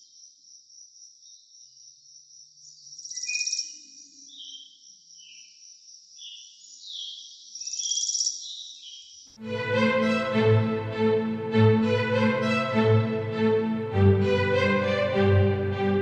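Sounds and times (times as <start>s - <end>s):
bird chirps: 2.6s - 9.2s
string music: 9.4s - 16.0s.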